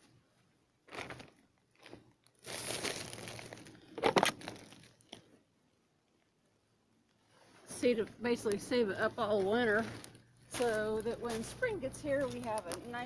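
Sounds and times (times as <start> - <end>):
cardboard crumpling and tearing: 2.4 - 5.2.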